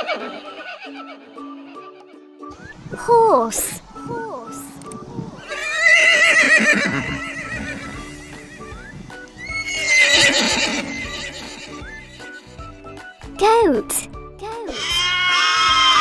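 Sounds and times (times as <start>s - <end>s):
horse neighing: 2.6s - 12.7s, 14.7s - 16.0s.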